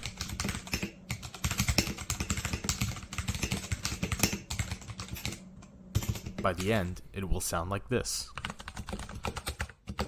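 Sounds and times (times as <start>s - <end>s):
fast typing on mechanical keyboard: 0.0s - 5.4s, 6.0s - 6.2s, 8.4s - 10.0s.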